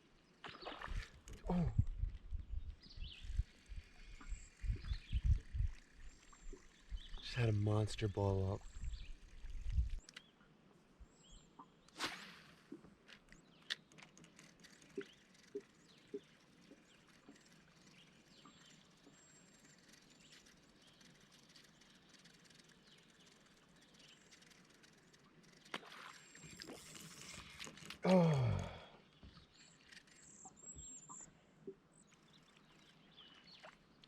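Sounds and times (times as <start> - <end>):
faint bird chirps: 0.4 - 10.4, 28.4 - 34.0
small clicks and knocks: 13.0 - 17.8.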